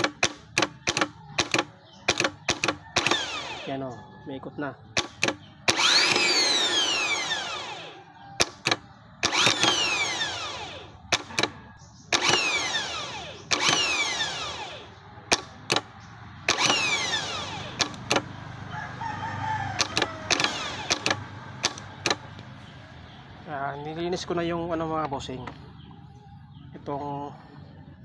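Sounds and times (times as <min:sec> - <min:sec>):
sharp clicks: 0:00.0 - 0:03.7, 0:05.0 - 0:18.4, 0:19.8 - 0:22.6
starter motor whine: 0:00.0 - 0:04.0, 0:05.0 - 0:22.6.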